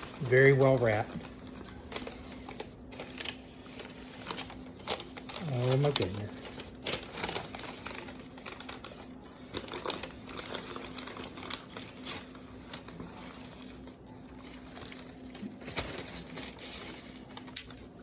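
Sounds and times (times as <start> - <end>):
packing material crinkling: 0.0 - 18.0.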